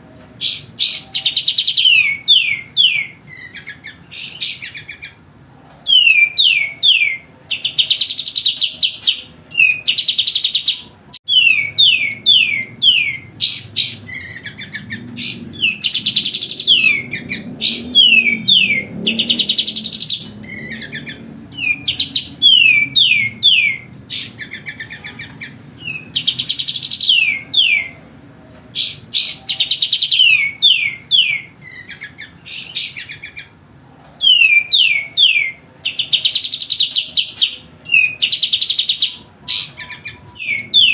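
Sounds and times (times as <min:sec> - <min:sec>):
bulbul singing: 0:00.3 - 0:40.9.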